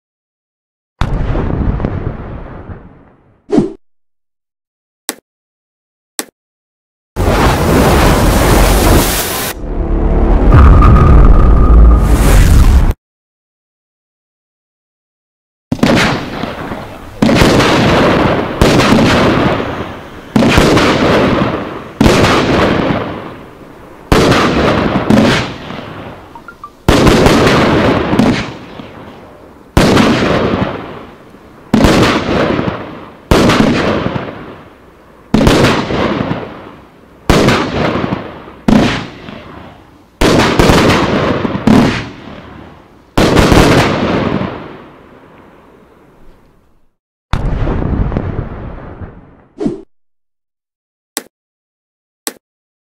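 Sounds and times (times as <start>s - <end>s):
firework bangs: 7.2s - 9.6s, 15.7s - 34.7s, 35.3s - 44.9s.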